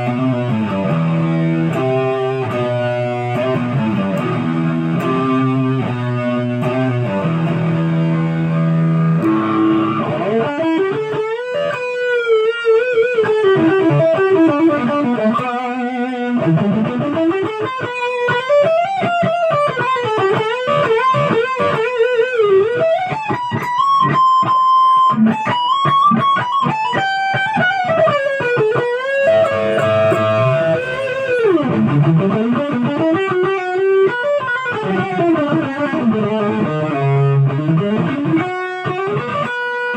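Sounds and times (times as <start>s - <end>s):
electric guitar lead: 0.0s - 39.9s.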